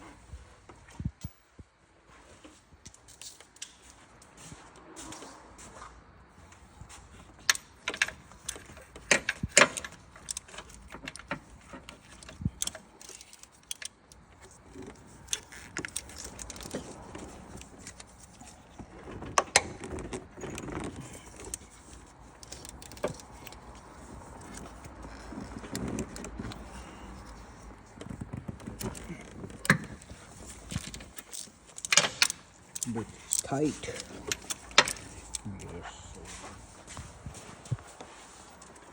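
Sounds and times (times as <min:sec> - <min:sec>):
metal tools clinking: 0:28.7 - 0:36.3.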